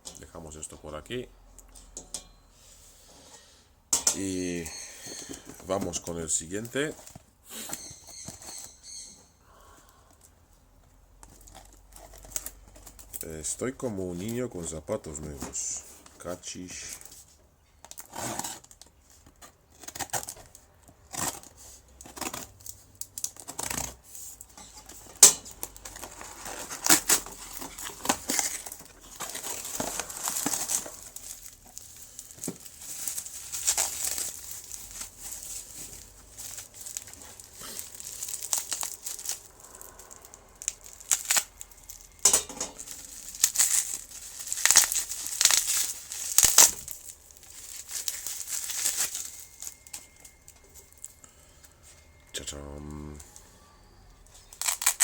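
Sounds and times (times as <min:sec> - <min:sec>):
packaging crinkling: 0:11.2 - 0:52.4, 0:54.4 - 0:55.0
packaging tearing: 0:17.9 - 0:51.2, 0:54.4 - 0:55.0.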